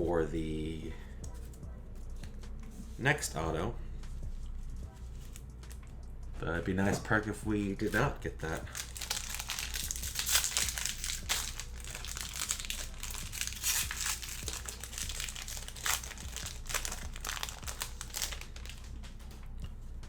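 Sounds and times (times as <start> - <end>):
wrapper crinkling and tearing: 7.8 - 19.3.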